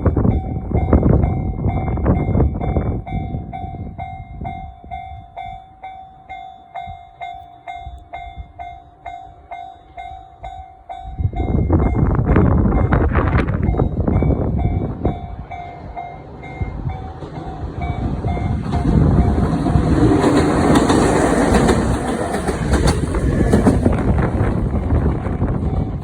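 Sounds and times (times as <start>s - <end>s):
level crossing warning bell: 0.0s - 23.5s, 25.6s - 26.0s
train rumble: 0.0s - 26.0s
wheels clicking over rail joints: 15.6s - 26.0s.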